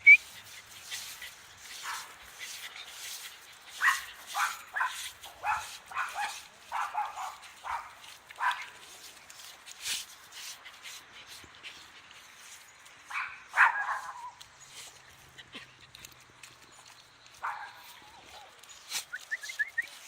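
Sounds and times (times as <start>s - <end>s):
dog barking: 3.8s - 8.7s, 13.1s - 14.4s, 17.4s - 17.8s.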